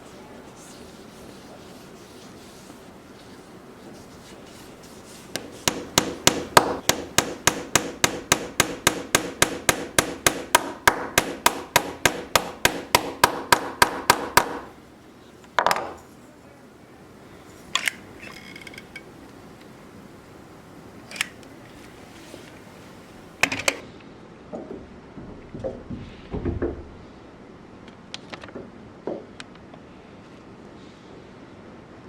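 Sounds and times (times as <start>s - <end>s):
hammer tapping on wood: 5.4s - 14.7s.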